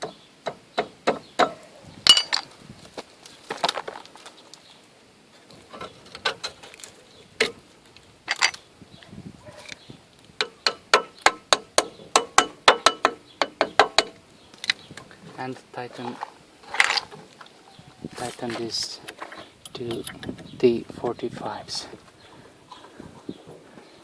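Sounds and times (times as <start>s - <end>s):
metal tools knocking: 1.4s - 2.5s, 10.4s - 14.2s, 19.6s - 20.5s.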